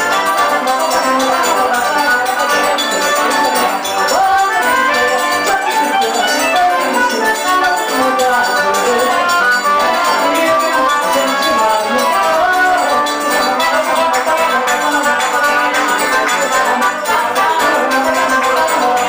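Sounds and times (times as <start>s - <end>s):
accordion and guitar: 0.0s - 19.0s
drum and hand percussion: 0.0s - 19.0s.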